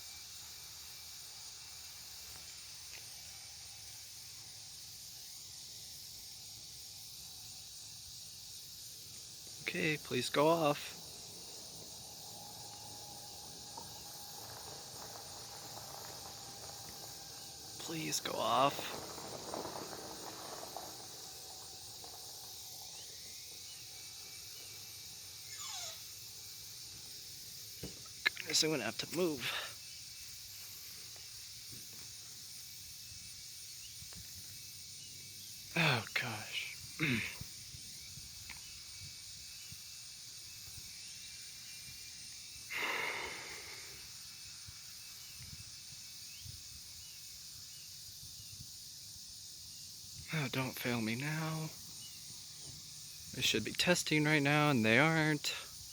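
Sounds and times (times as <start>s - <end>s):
steady high hiss: 0.0s - 55.9s
faint chirps: 20.5s - 32.0s
short falling squeal: 25.4s - 26.0s.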